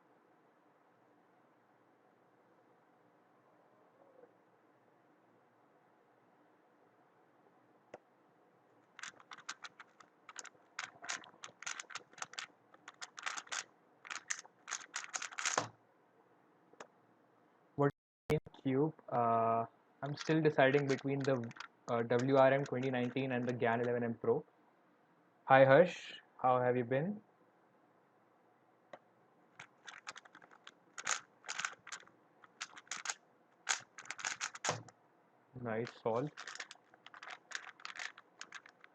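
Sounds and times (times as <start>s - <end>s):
puzzle cube plastic clicking: 8.9s - 15.7s, 20.1s - 23.6s, 29.6s - 34.9s, 35.8s - 38.9s.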